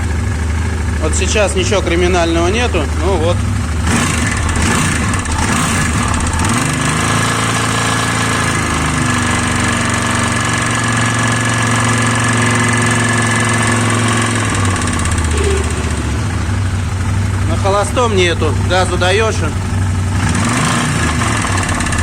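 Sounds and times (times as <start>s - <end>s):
engine knock: 0.0s - 22.0s
snowmobile engine revving: 3.8s - 16.6s, 20.2s - 22.0s.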